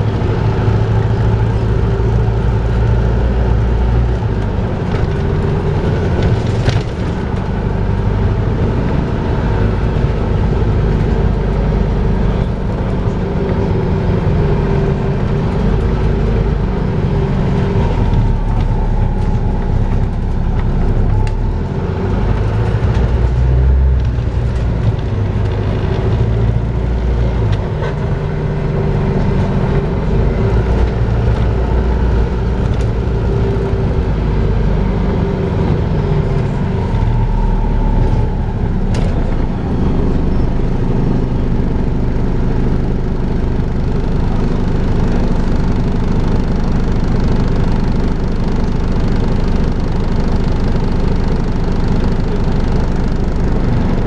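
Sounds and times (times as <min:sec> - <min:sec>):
bus engine low hum: 0:00.0 - 0:54.0
whining drone: 0:00.0 - 0:54.0.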